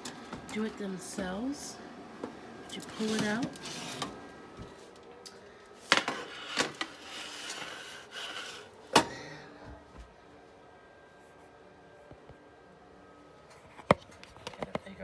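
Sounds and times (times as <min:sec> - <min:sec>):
metal pan sliding and scraping: 0:03.0 - 0:04.3, 0:05.8 - 0:08.8.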